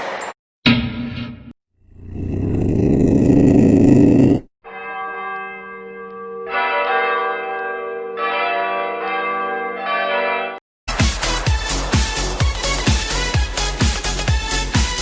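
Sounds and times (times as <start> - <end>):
church bells ringing: 4.6 - 10.6.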